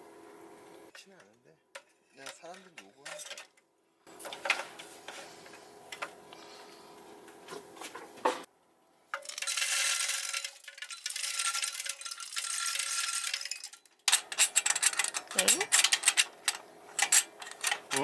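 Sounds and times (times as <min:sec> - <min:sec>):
metal stove parts clinking: 0:01.8 - 0:03.6, 0:09.1 - 0:18.0.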